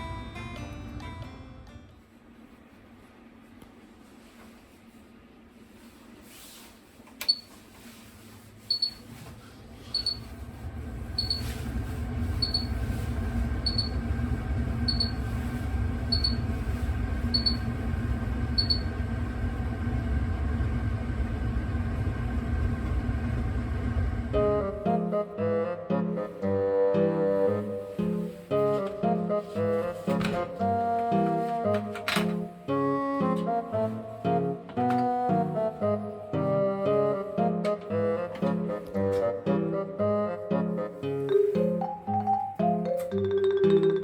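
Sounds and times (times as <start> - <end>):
exhaust fan humming: 2.2 - 40.5
range hood warning beeps: 7.2 - 7.5, 8.7 - 9.2, 9.9 - 10.4, 11.1 - 11.6, 12.3 - 12.9, 13.6 - 14.1, 14.8 - 15.4, 16.1 - 16.5, 17.3 - 17.8, 18.5 - 19.0.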